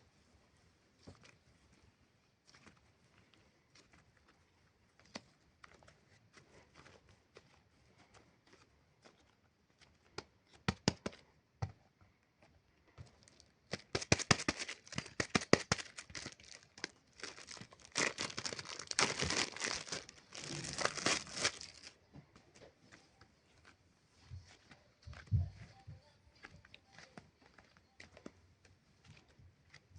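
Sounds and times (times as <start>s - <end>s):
plastic packaging crinkling and tearing: 13.2s - 22.0s.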